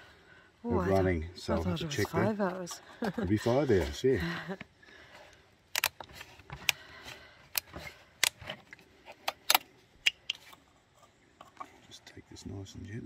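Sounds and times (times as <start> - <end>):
clicks and knocks of small parts: 5.7 - 6.8, 7.5 - 11.7.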